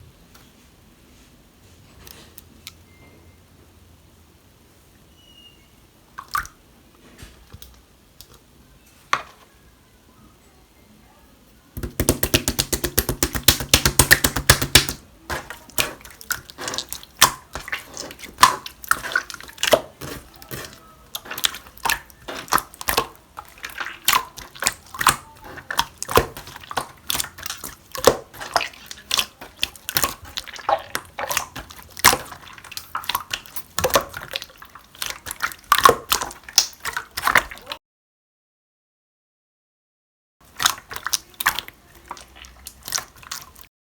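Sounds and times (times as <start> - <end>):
slime wet clicks and pops: 35.0 - 37.3.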